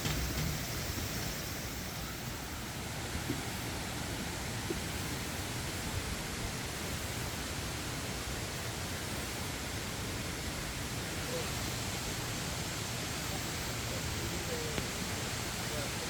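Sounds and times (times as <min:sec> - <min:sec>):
mountain stream rushing: 0:00.0 - 0:16.0.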